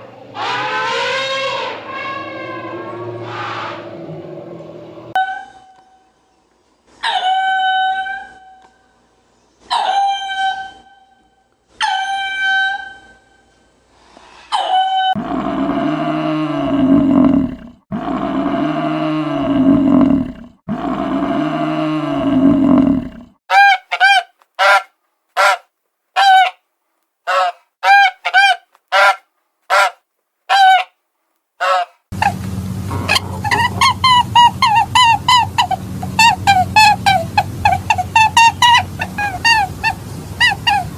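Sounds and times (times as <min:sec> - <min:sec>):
honking bird calls: 0:00.3 - 0:05.1, 0:27.3 - 0:30.9, 0:31.6 - 0:40.9.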